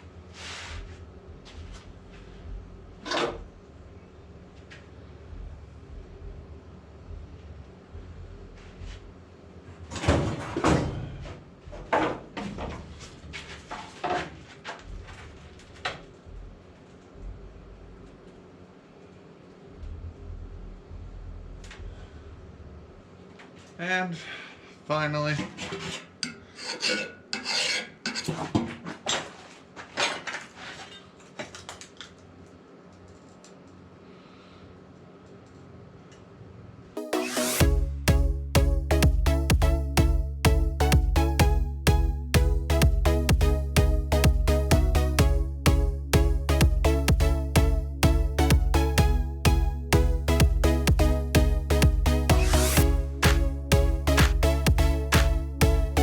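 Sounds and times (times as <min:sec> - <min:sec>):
faint low hum: 0:00.0 - 0:25.8
hand file scraping metal: 0:25.9 - 0:28.3.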